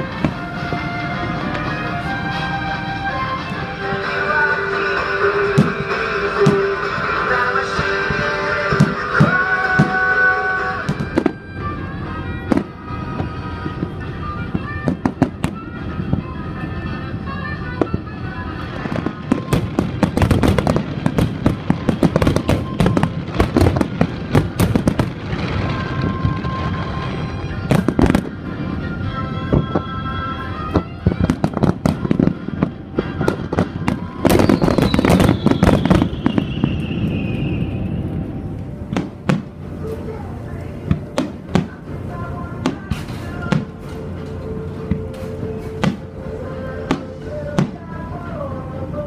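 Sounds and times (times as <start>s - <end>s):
fireworks bursting: 0.0s - 49.0s
music: 0.0s - 49.0s
falling firework whistle: 19.0s - 28.4s, 30.7s - 39.4s.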